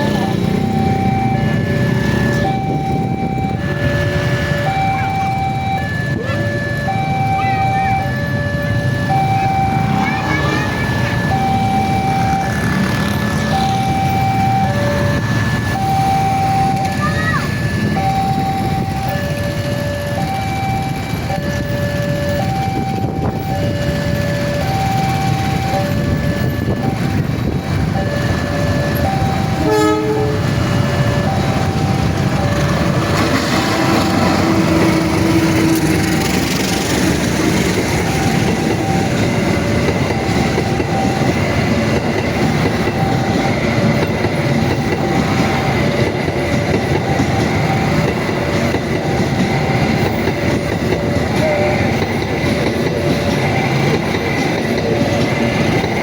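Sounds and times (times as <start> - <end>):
road traffic rumble: 0.0 - 56.0
two-tone level crossing siren: 0.0 - 56.0
train horn blast: 29.6 - 30.8, 33.1 - 37.0.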